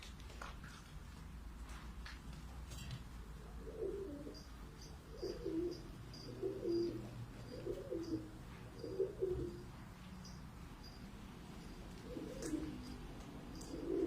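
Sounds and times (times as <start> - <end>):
pigeon cooing: 3.4 - 9.7, 11.9 - 14.0
small birds chirping: 3.7 - 14.0.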